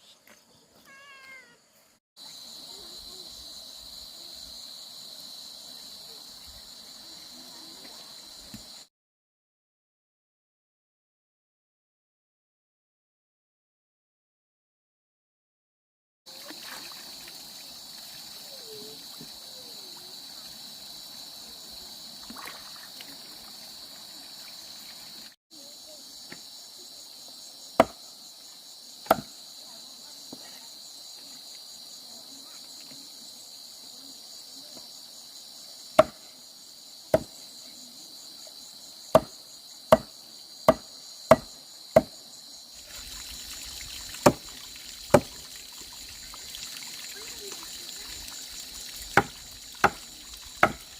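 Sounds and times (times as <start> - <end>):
insects chirping: 0.0 - 8.9, 16.3 - 50.9.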